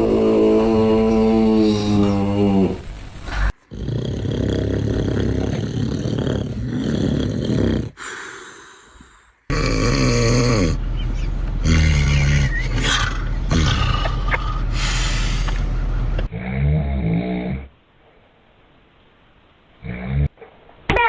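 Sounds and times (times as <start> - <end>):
person snoring loudly: 0.0 - 10.8, 11.6 - 15.6
steady low hum: 0.0 - 16.4.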